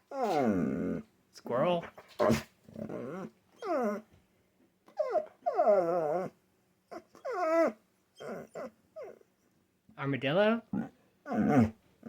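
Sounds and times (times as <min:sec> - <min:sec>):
dog whining vocalizations: 0:00.0 - 0:01.0, 0:02.2 - 0:04.2, 0:04.9 - 0:09.3, 0:10.7 - 0:11.8.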